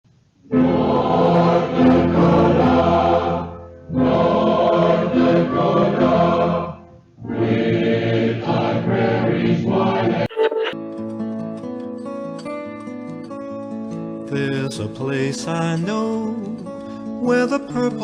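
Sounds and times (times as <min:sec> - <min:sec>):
choir singing sustained chords: 0:00.5 - 0:10.8.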